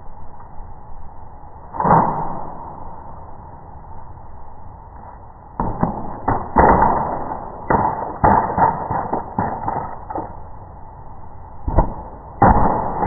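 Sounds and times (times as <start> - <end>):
skateboard knocking and clattering: 5.6 - 10.3.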